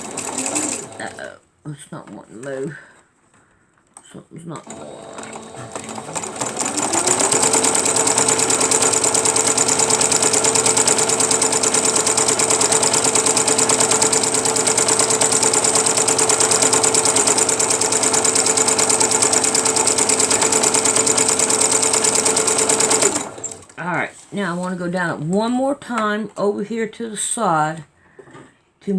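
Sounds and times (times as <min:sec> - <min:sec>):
sewing machine running: 0:00.0 - 0:01.4, 0:04.6 - 0:23.8.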